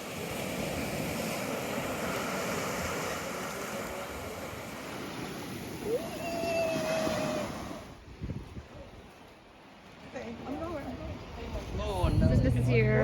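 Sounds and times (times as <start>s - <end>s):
surf washing on beach: 0.0s - 13.0s
wind on microphone: 5.2s - 9.1s, 10.9s - 13.0s.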